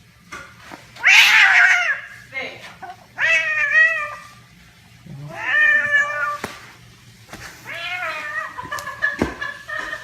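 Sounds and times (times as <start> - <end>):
cat meowing: 1.0 - 2.2, 3.1 - 4.3, 5.2 - 6.4, 7.6 - 8.7.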